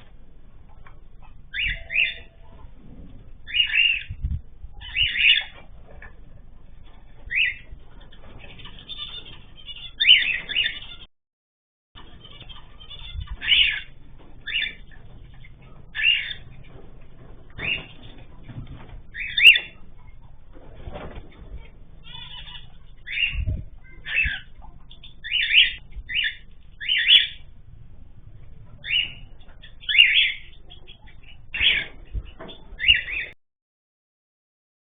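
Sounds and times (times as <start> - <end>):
pet birds chirping: 0.4 - 11.1, 12.0 - 33.4.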